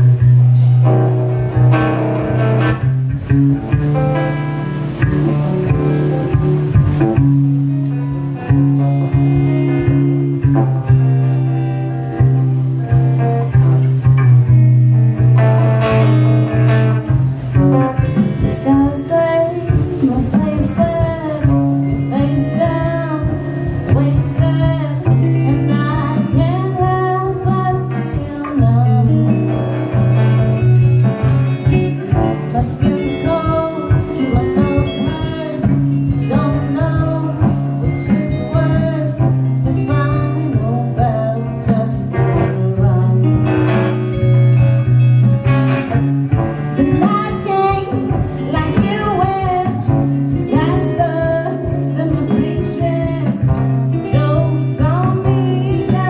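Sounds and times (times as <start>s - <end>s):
bass guitar: 0.0s - 56.0s
drums: 0.0s - 56.0s
electric guitars: 0.0s - 56.0s
person singing: 18.0s - 30.2s, 32.2s - 44.3s, 46.7s - 56.0s.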